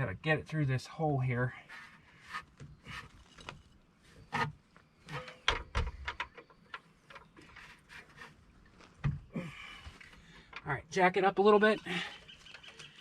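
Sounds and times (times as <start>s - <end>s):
metal clicks and knocks: 5.1s - 7.6s.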